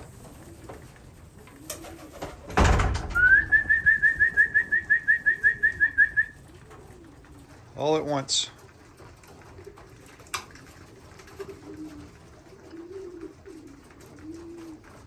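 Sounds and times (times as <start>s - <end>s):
pigeons cooing: 0.0s - 15.0s
loud short clatter: 2.2s - 6.0s.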